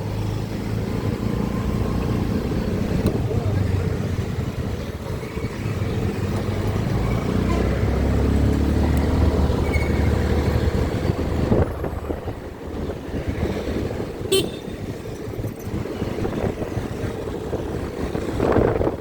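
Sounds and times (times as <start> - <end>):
engine and wind rumble: 0.0 - 19.0
vehicle horn tooting: 14.3 - 14.8.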